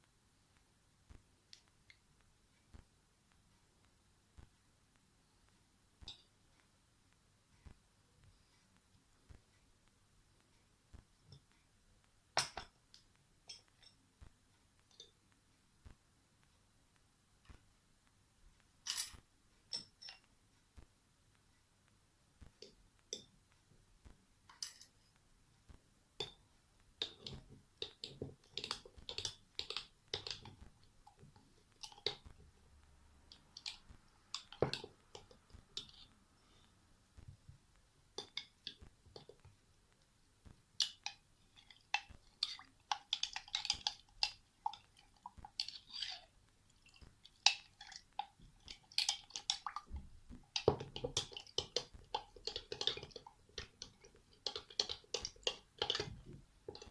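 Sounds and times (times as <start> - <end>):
kitchen utensils clicking and clinking: 50.5 - 56.9.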